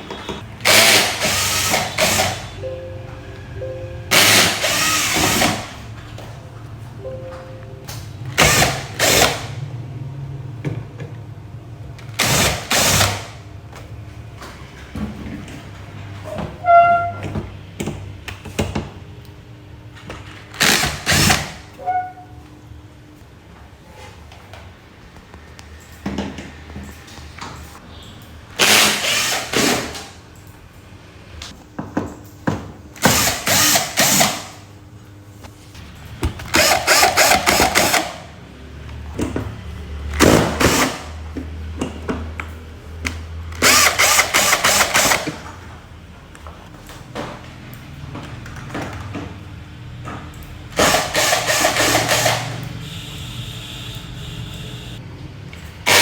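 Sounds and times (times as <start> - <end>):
power drill running: 0.6 - 2.6, 4.1 - 5.8, 8.4 - 9.5, 12.2 - 13.2, 28.6 - 30.0, 33.0 - 34.4, 36.5 - 38.2, 43.6 - 45.3, 50.8 - 52.6.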